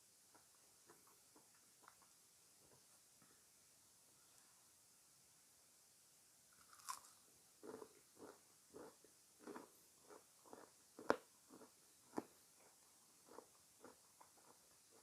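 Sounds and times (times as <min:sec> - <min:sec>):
wet chewing of fruit: 0:06.7 - 0:15.0.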